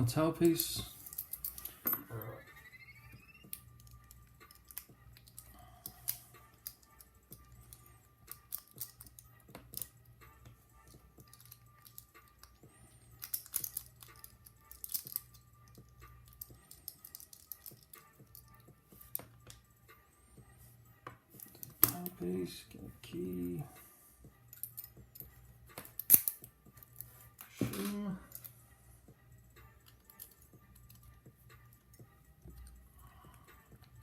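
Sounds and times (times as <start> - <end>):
steady low hum: 0.0 - 34.0
metal lock parts clicking: 1.0 - 2.2, 3.5 - 10.0, 10.8 - 19.3, 24.5 - 27.1.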